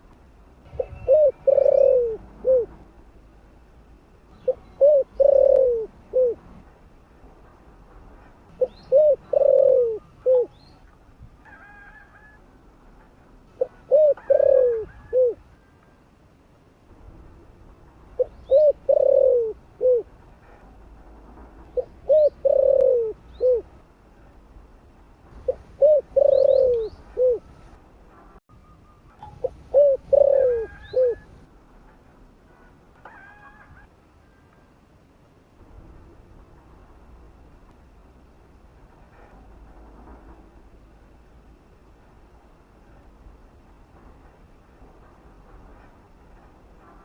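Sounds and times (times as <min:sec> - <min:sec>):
dove cooing: 0:00.8 - 0:02.8, 0:04.4 - 0:06.5, 0:08.6 - 0:10.6, 0:13.6 - 0:15.4, 0:18.2 - 0:20.1, 0:21.7 - 0:23.7, 0:25.4 - 0:27.5, 0:29.2 - 0:31.4.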